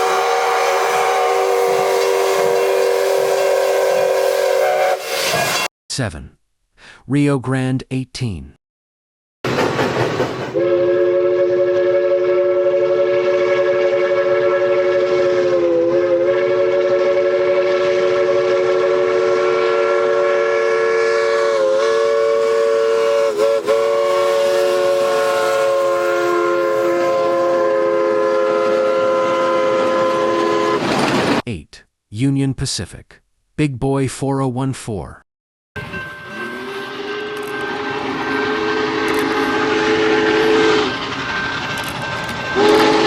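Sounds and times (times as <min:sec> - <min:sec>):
locomotive chime whistle: 0:10.6 - 0:30.8, 0:35.8 - 0:43.0.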